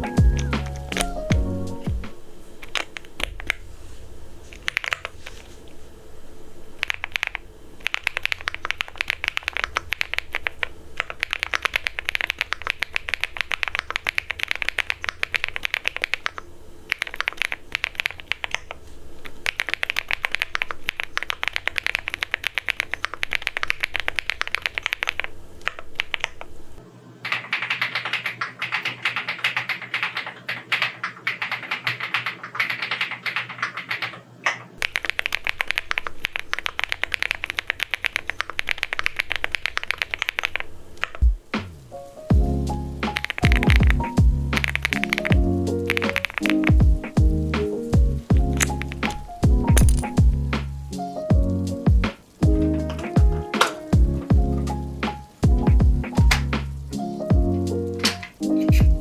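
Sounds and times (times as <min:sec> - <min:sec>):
mechanical keyboard key clicks: 0:34.8 - 0:41.2, 0:43.1 - 0:43.8, 0:44.6 - 0:46.8, 0:48.6 - 0:50.2.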